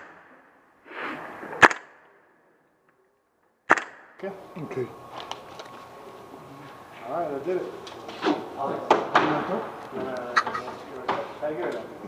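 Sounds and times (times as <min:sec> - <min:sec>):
airsoft gun shots: 0:00.0 - 0:00.6, 0:01.2 - 0:02.2, 0:03.6 - 0:04.2.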